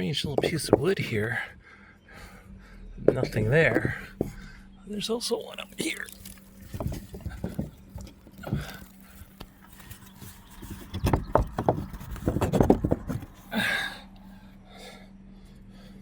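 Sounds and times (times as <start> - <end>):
knocks and rustles on tree: 5.8 - 13.5.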